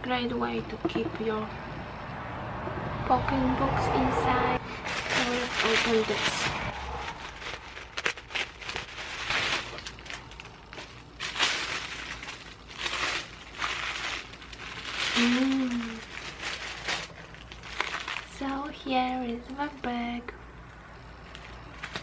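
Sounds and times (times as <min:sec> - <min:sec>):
packaging crinkling: 0:04.7 - 0:19.9, 0:21.2 - 0:22.0.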